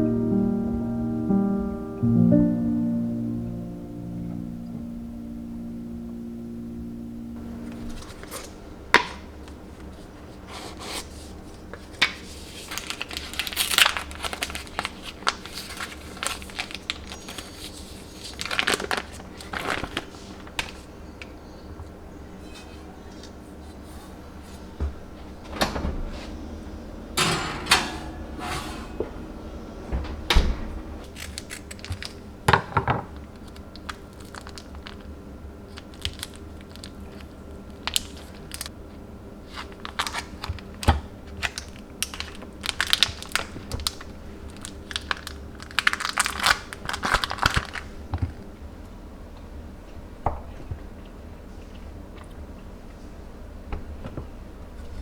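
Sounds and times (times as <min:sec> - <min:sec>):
rustling and crinkling: 0:07.7 - 0:21.3, 0:31.0 - 0:32.3, 0:33.1 - 0:38.7, 0:39.4 - 0:48.5
kitchen knocks and clicks: 0:27.2 - 0:29.3, 0:32.5 - 0:33.1.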